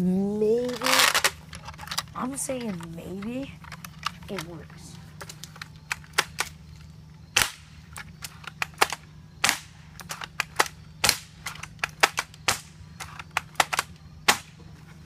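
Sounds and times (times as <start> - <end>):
airsoft rifle shots: 7.3 - 14.6.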